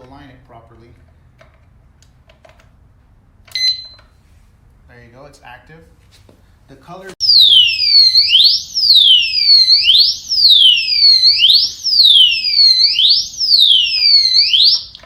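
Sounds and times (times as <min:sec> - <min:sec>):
alarm siren wailing: 0:07.2 - 0:15.0.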